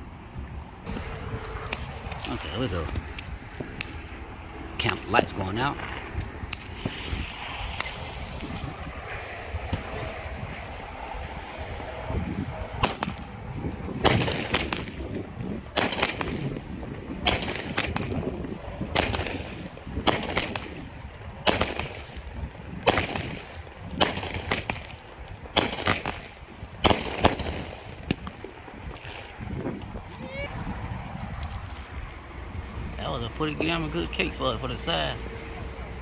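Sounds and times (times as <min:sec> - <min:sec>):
firework shots: 0:00.9 - 0:29.3.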